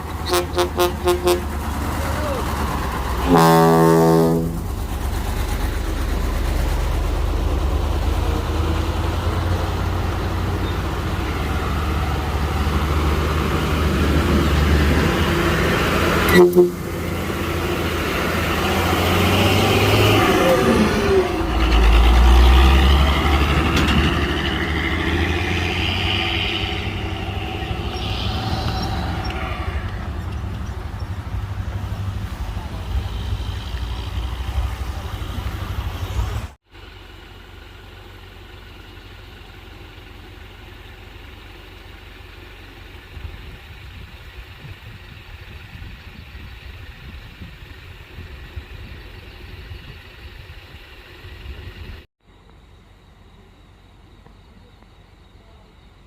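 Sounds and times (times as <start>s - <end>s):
diesel truck engine revving: 0.0s - 36.6s
engine idling: 0.0s - 56.0s
voices: 1.4s - 3.4s, 23.4s - 35.5s, 53.4s - 56.0s.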